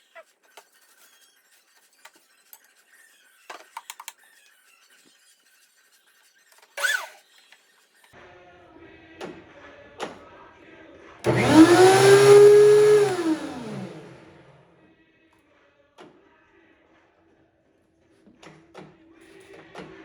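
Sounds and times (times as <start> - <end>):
short squeak: 6.7 - 7.5
planer motor starting and winding down: 11.3 - 14.6.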